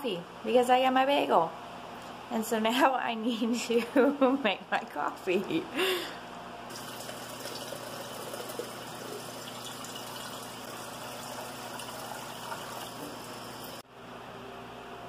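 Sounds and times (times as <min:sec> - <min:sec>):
water running: 0:06.7 - 0:13.8.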